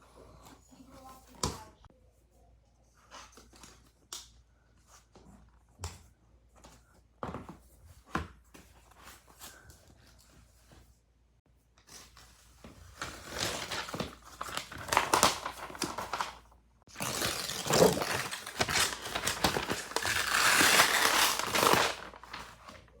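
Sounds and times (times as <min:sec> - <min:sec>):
packaging crinkling: 0:13.0 - 0:23.0.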